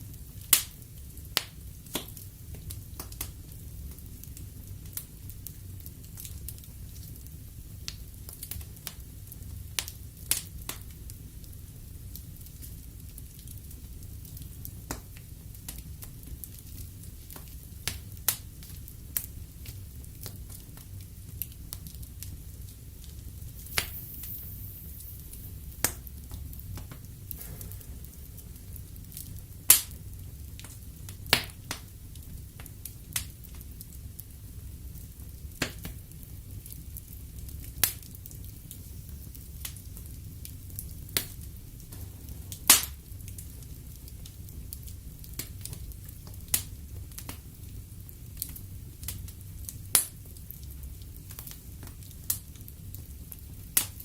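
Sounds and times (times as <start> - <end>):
wood fire hissing: 0.0 - 54.0
logs crackling and popping: 13.4 - 34.3, 37.5 - 54.0.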